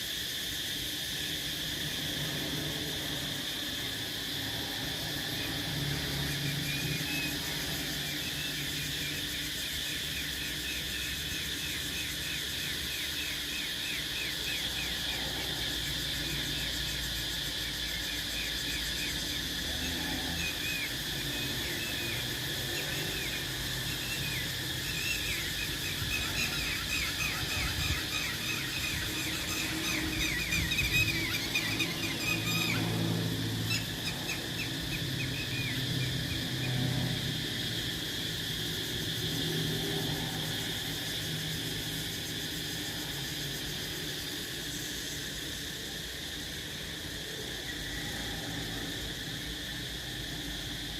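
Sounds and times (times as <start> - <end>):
cicadas droning: 0.0 - 50.9.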